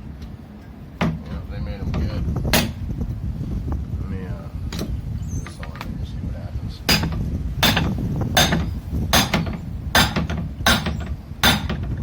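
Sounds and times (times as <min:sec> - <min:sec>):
hammer striking metal: 0:02.5 - 0:02.8, 0:06.9 - 0:11.9.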